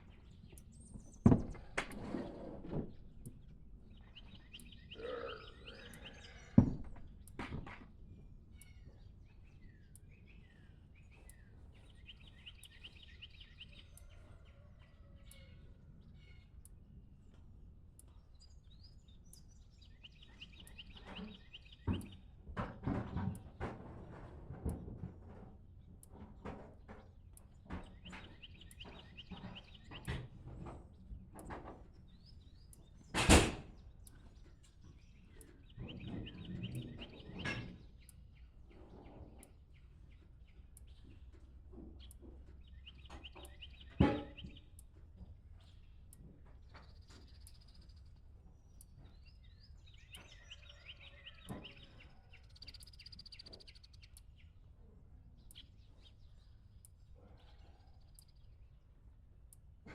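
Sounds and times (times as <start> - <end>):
birds singing trilled phrases: 4.0 - 6.6.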